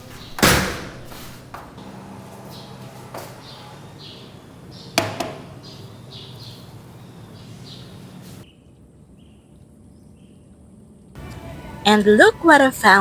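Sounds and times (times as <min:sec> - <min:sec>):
bird chirping: 0:02.2 - 0:10.5.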